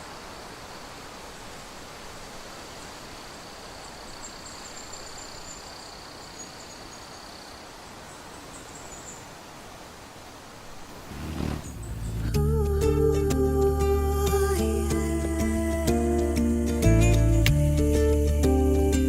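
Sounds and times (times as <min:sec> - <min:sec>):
steady hiss: 0:00.0 - 0:16.5
broken high buzzing: 0:10.8 - 0:12.4.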